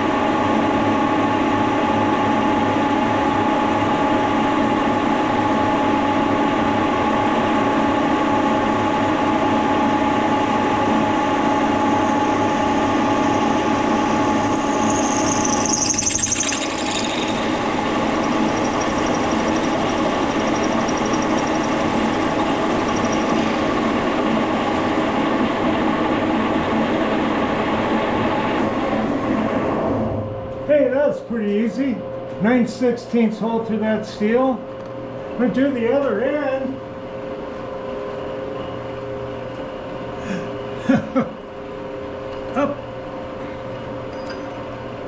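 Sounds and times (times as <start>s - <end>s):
milling machine humming: 2.2s - 29.6s
high squeal of drill cutting: 11.7s - 24.0s.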